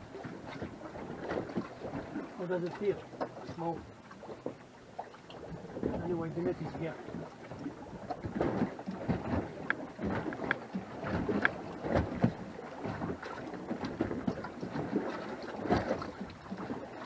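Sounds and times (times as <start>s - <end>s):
water splashing: 0.0s - 17.0s
knocks on a boat: 8.0s - 16.8s.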